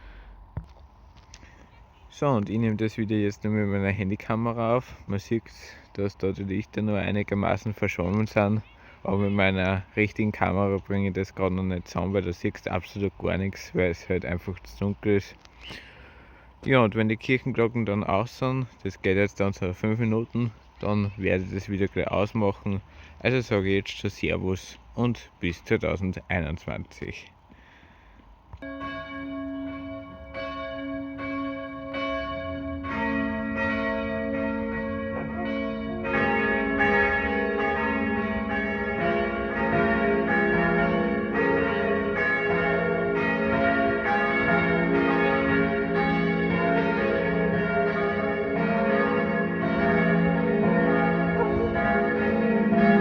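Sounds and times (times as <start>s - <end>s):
church bells pealing: 28.6s - 53.0s.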